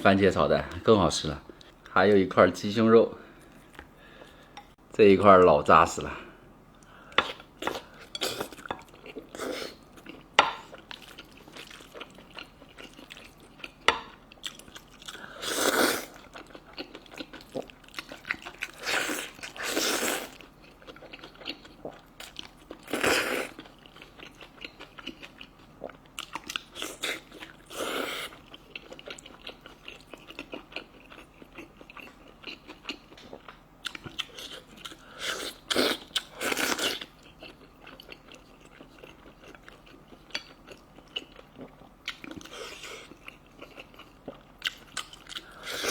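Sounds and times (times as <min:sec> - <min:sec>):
person chewing close up: 0:06.8 - 0:45.9.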